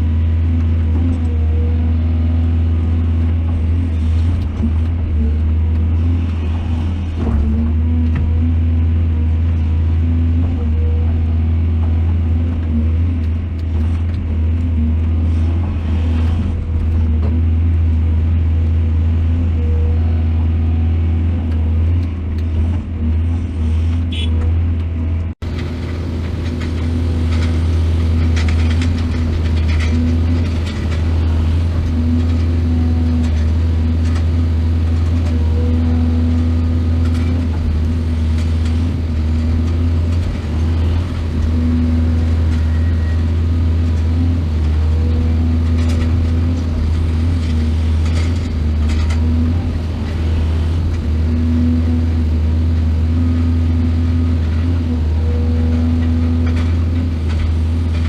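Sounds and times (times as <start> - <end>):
heavy diesel engine droning: 0.0 - 58.0
knocks and rattles: 3.2 - 8.7, 24.0 - 35.4.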